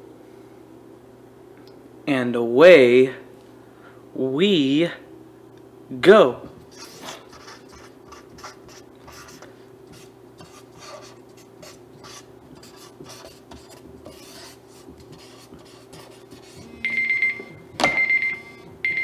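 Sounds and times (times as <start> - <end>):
pen scratching on paper: 6.5 - 16.8
electronic timer alarm: 16.8 - 19.0.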